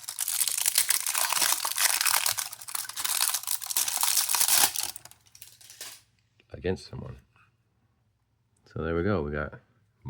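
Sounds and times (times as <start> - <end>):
plastic packaging crinkling and tearing: 0.0 - 5.8.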